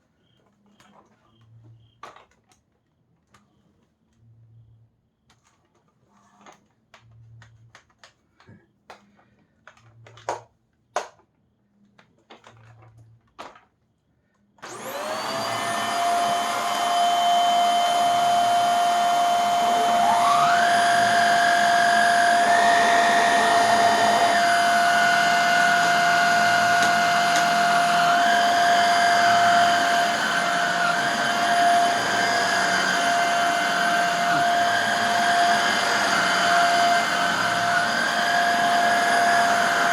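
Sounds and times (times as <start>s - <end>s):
vacuum cleaner motor whining: 14.6s - 39.9s.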